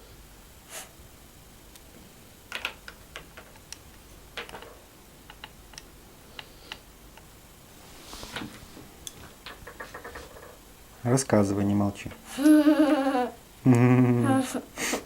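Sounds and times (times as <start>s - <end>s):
play-dough tools clicking and tapping: 9.4s - 10.6s.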